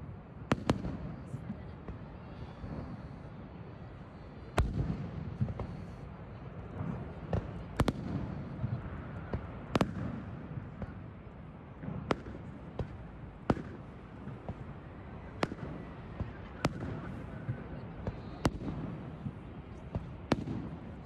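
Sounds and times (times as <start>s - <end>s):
fireworks bangs: 6.6s - 11.0s, 11.7s - 21.0s.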